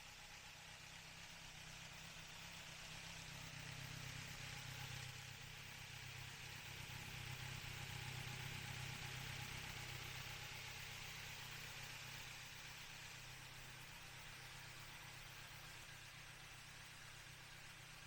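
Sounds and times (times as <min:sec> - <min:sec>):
motorcycle engine idling: 0:00.0 - 0:18.0.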